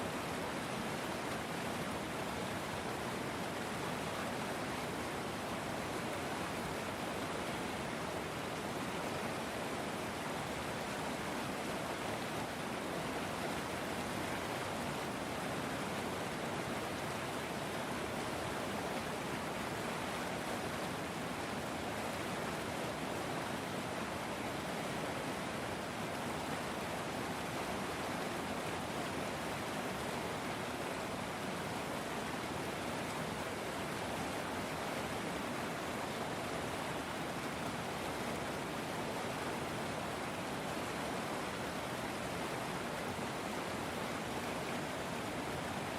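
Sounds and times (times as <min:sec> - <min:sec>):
river water flowing: 0:00.0 - 0:45.9.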